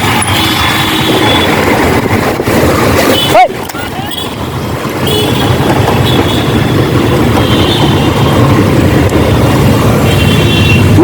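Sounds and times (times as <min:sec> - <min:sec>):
wind on microphone: 0:00.0 - 0:05.0.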